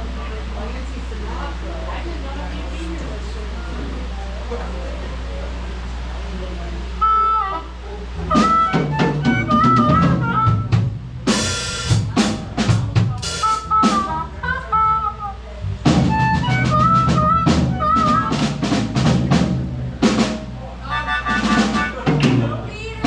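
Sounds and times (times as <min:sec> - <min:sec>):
steady low bass: 0:03.4 - 0:23.0
blues band playing: 0:07.0 - 0:23.0
drum kit: 0:08.2 - 0:23.0.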